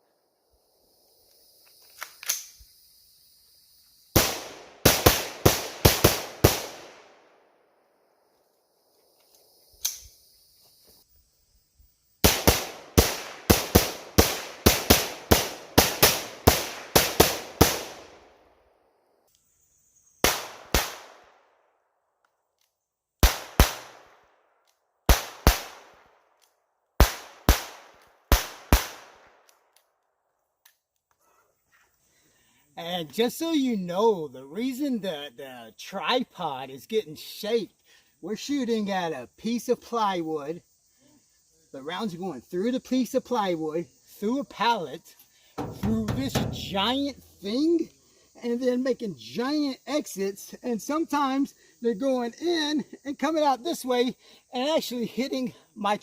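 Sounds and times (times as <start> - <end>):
rifle gunshots: 4.2 - 7.2, 12.2 - 18.2, 20.3 - 21.2, 23.2 - 24.2.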